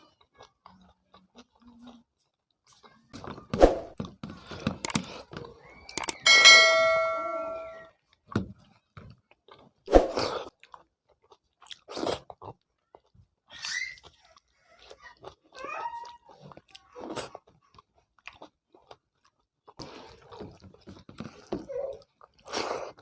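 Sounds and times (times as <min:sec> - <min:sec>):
chewing: 0:00.0 - 0:06.2, 0:08.0 - 0:23.0
metal dish struck and ringing: 0:06.2 - 0:07.8.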